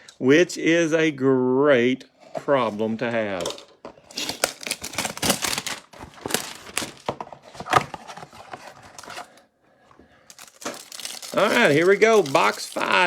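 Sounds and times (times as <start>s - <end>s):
packaging crinkling and rustling: 4.1s - 9.4s, 10.3s - 13.0s.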